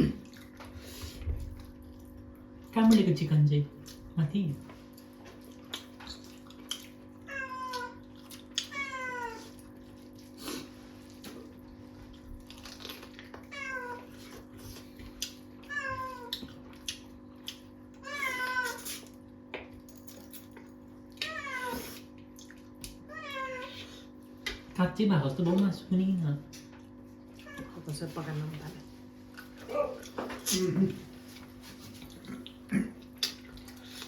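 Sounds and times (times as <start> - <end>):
cat meowing: 7.3 - 8.0, 8.7 - 9.5, 13.5 - 14.1, 15.7 - 16.3, 18.0 - 19.0, 21.2 - 22.0, 23.1 - 23.8.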